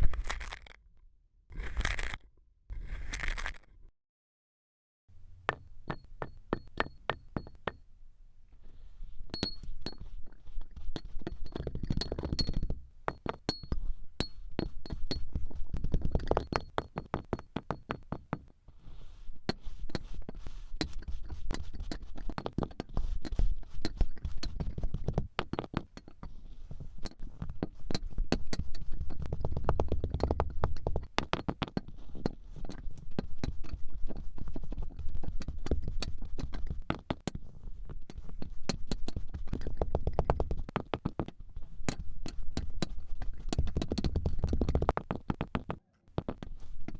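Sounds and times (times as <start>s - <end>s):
sharp clicks and dull thuds: 27.0s - 46.9s.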